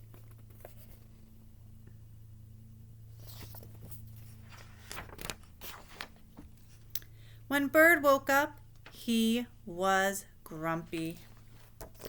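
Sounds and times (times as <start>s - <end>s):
low electrical hum: 0.0s - 12.0s
paper page turning: 3.2s - 6.9s.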